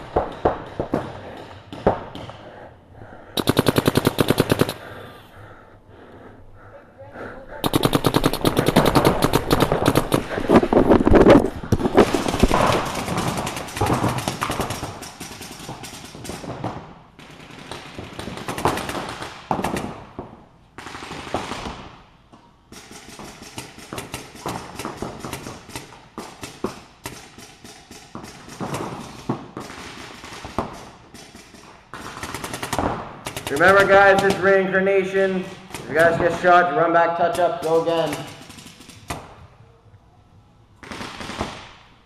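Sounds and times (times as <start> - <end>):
paintball markers firing: 3.4 - 5.1, 7.6 - 16.8, 22.7 - 34.6, 37.2 - 39.4.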